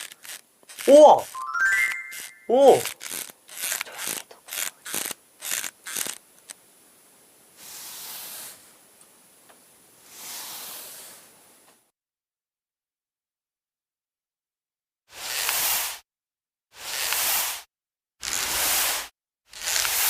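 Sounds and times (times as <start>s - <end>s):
spray bottle hissing spurts: 0.0s - 6.5s, 15.1s - 16.0s, 16.8s - 20.0s.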